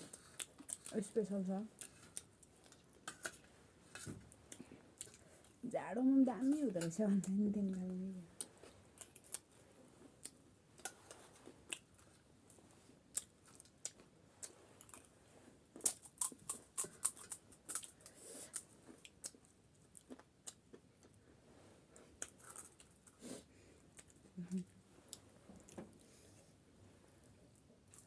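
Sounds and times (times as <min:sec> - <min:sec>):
crunchy snack being chewed: 0:15.8 - 0:21.2, 0:22.2 - 0:23.2.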